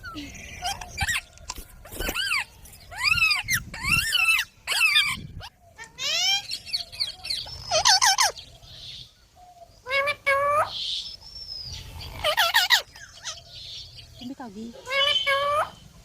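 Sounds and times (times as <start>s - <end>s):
parakeets harsh calls: 2.0s - 8.4s, 11.9s - 13.8s, 14.6s - 15.8s.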